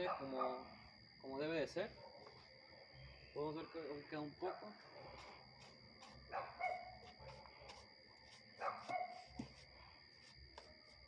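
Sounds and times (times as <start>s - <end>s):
dog barking: 0.0s - 0.6s, 2.0s - 2.3s, 6.3s - 7.5s, 8.6s - 9.2s.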